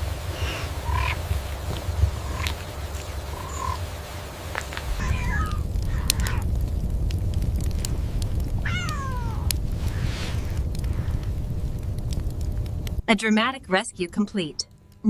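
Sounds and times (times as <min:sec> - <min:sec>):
low steady rumble: 0:00.0 - 0:15.0
panther cub mewing: 0:04.9 - 0:06.5.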